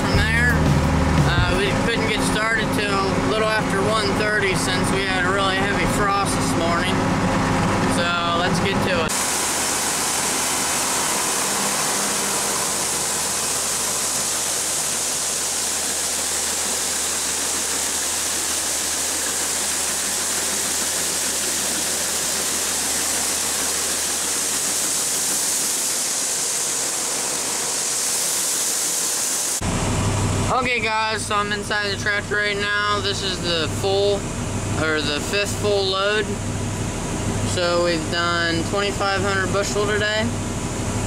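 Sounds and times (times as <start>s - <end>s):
low engine hum: 0.0s - 27.6s
steady rushing hiss: 9.1s - 29.6s.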